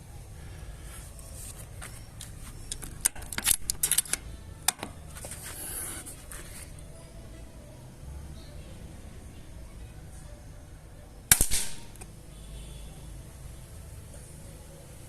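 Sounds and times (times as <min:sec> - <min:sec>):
rifle metallic clicks: 0:02.2 - 0:05.0, 0:11.3 - 0:12.1.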